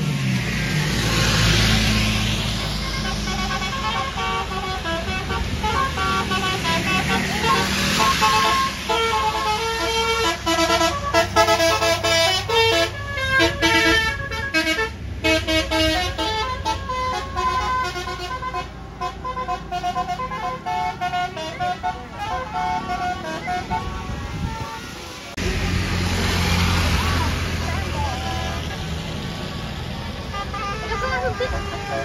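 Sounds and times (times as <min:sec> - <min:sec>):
bus engine hum: 0:00.0 - 0:32.0
musical bus air horn tune: 0:02.6 - 0:25.2, 0:30.2 - 0:32.0.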